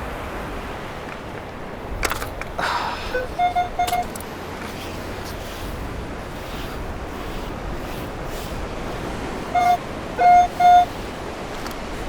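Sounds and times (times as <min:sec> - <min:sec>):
metal detector beeps: 0:03.0 - 0:04.3, 0:09.6 - 0:11.0.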